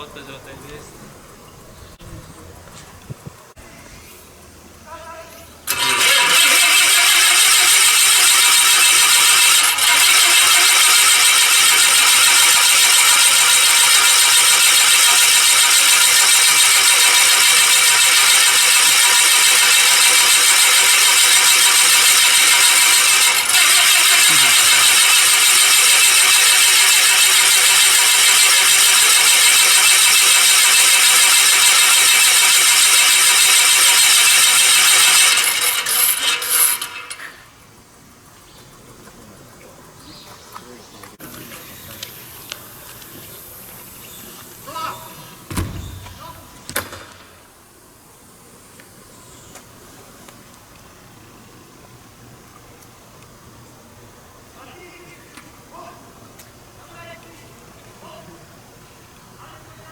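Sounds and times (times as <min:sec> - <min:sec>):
propeller aircraft engine running: 0:05.7 - 0:37.1.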